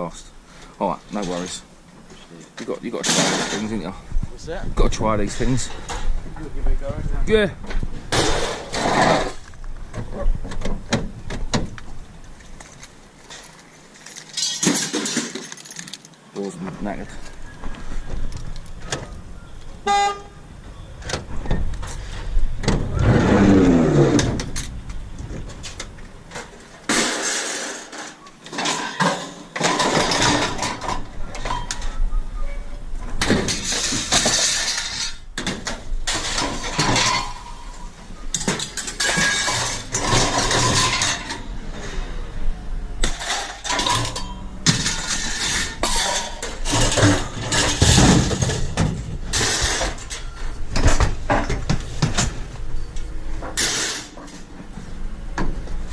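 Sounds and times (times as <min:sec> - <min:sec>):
scrap metal clanking: 0:08.1 - 0:09.5, 0:21.8 - 0:32.0, 0:33.2 - 0:42.3, 0:43.0 - 0:54.9.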